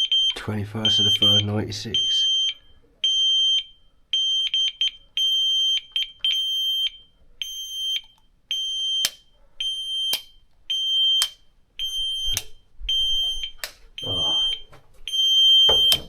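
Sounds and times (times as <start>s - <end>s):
shrill electronic alarm beeps: 0.0s - 16.0s.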